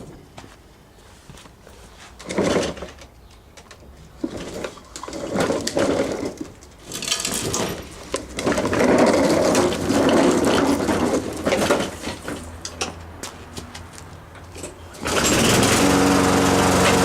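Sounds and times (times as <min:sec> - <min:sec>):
lawn mower engine turning over: 0:02.1 - 0:17.0
lawn mower recoil cord pulls: 0:02.2 - 0:03.1, 0:04.2 - 0:12.9, 0:14.6 - 0:17.0.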